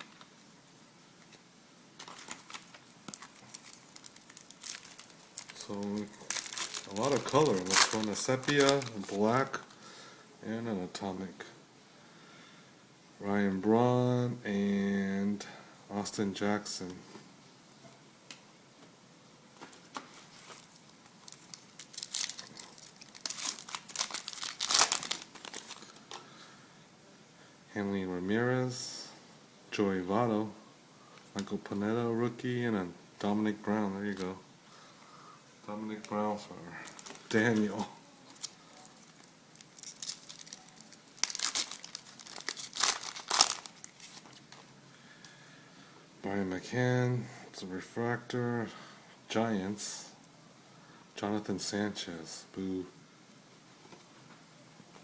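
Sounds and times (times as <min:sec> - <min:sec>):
foil wrapper crinkling and tearing: 0:02.0 - 0:09.8, 0:20.3 - 0:26.1, 0:36.8 - 0:44.5.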